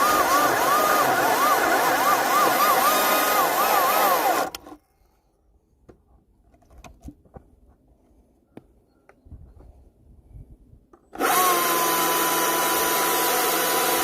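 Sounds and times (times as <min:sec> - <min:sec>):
battery chainsaw motor whine: 0:00.0 - 0:04.8, 0:11.2 - 0:14.0.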